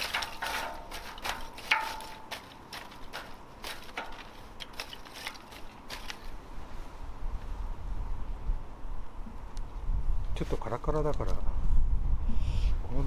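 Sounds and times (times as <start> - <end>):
twigs and leaves crackling: 0.0 - 6.8.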